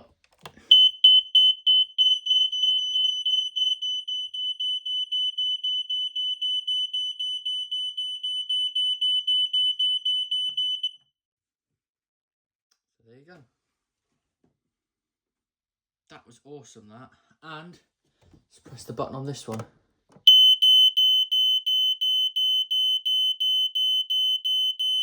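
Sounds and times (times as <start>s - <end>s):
smoke alarm beeping: 0.6s - 11.0s, 20.3s - 25.0s.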